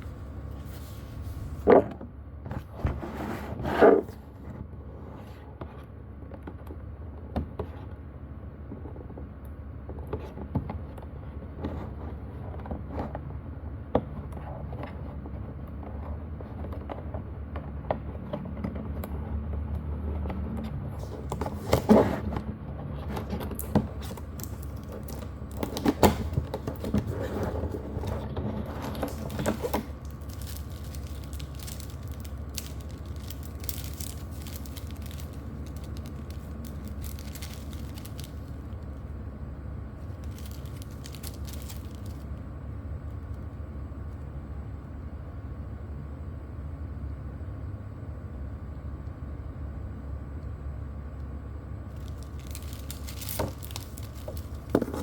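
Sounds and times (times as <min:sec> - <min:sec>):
low background hum: 0:00.0 - 0:55.0
packaging clicks and rustling: 0:21.0 - 0:22.4, 0:23.0 - 0:39.1, 0:40.0 - 0:42.3, 0:51.9 - 0:55.0.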